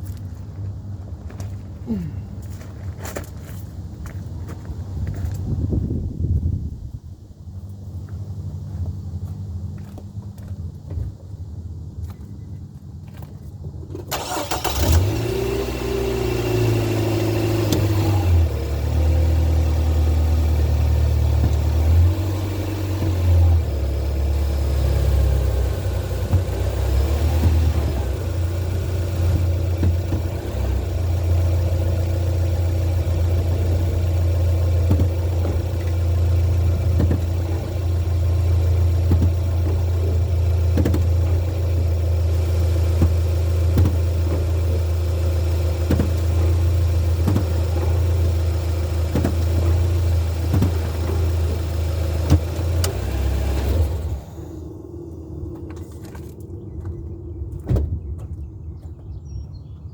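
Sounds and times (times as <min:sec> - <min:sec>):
car engine idling: 0:14.1 - 0:59.9.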